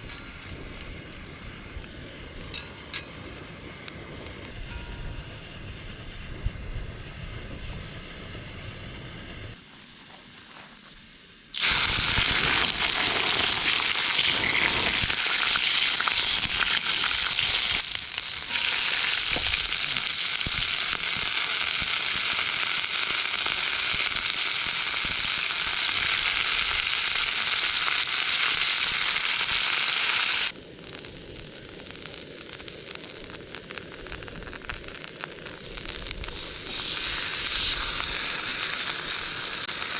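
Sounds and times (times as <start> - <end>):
steak sizzling: 11.0 - 39.9.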